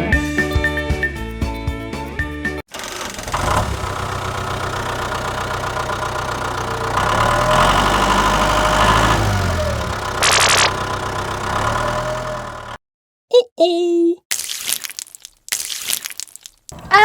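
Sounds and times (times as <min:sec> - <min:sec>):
engine running at low speed: 0:02.8 - 0:12.8.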